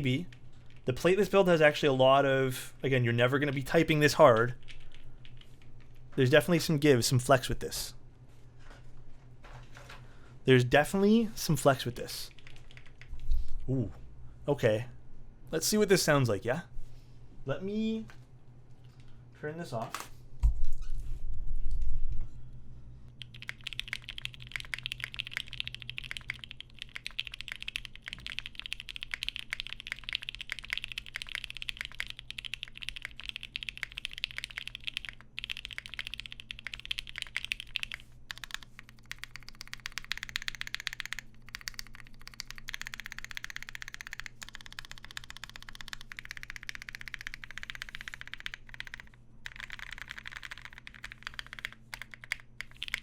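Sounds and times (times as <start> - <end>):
fast typing on mechanical keyboard: 3.4 - 6.1, 12.3 - 13.1, 23.2 - 53.0.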